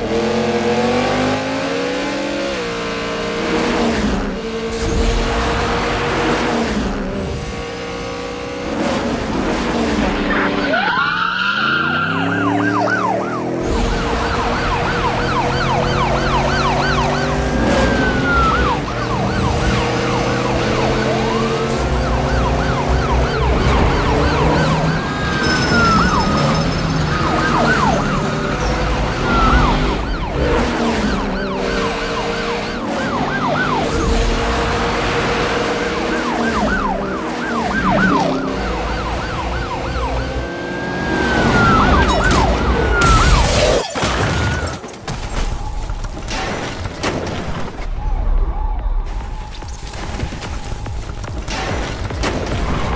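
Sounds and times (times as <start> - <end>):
siren wail: 10.2 - 46.2, 47.9 - 51.1
police siren yelping: 10.3 - 44.8
vehicle engine: 11.6 - 43.0.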